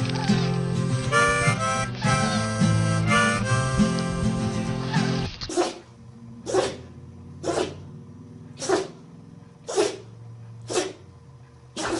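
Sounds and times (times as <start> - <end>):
dog sneezing: 4.9 - 7.8, 8.6 - 9.0, 9.6 - 10.1, 10.7 - 11.0.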